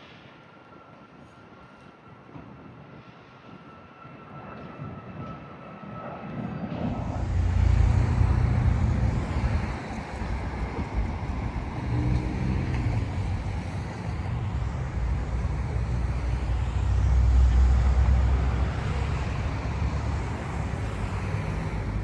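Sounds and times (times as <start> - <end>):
traffic rumble: 6.8 - 22.0.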